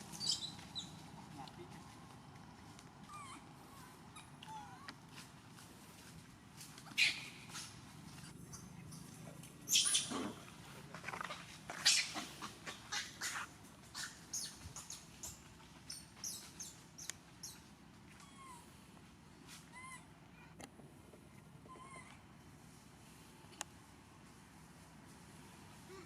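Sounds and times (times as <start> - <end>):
monkeys squealing and shrieking: 0.1 - 1.0, 6.9 - 16.8, 21.7 - 22.2.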